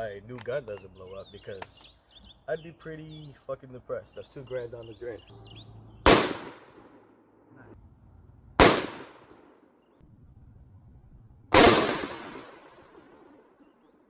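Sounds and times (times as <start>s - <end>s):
rifle shots echoing: 6.0s - 7.1s, 8.6s - 9.6s, 11.5s - 13.6s.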